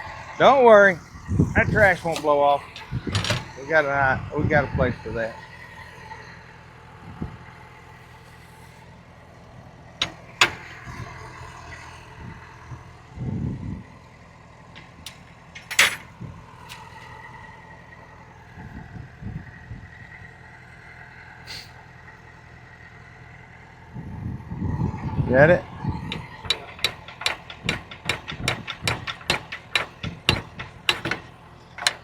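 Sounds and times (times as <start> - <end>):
engine idling: 0.0 - 32.0
sharp clicks or knocks: 26.1 - 32.0.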